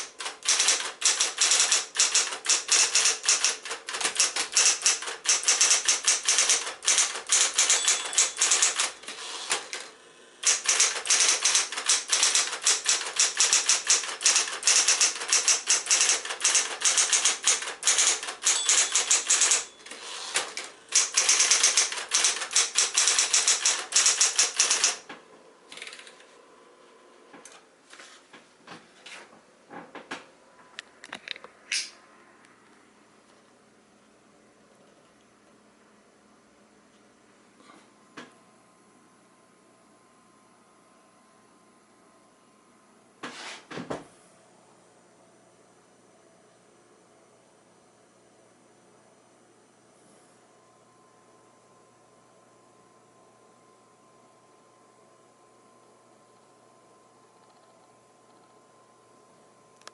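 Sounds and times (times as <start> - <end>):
electric typewriter typing: 0.0 - 25.1, 25.7 - 26.2
faint steady hum: 5.1 - 11.0, 25.0 - 43.2, 43.8 - 59.9.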